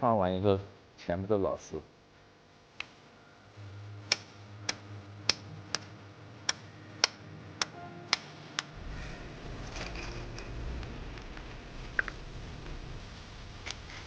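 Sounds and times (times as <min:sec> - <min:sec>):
faint low hum: 0:00.0 - 0:14.0
low rumble: 0:08.8 - 0:14.0.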